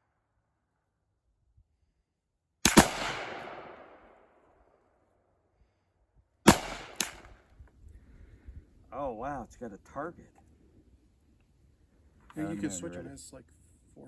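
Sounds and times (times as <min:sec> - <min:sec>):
gunshots with echo: 0:02.6 - 0:04.2, 0:06.5 - 0:07.3.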